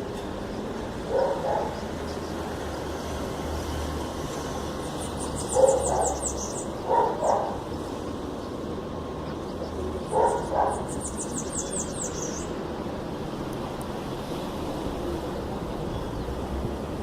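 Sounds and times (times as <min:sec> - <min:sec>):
bird trilling chirps: 0:05.1 - 0:07.5, 0:10.1 - 0:12.6.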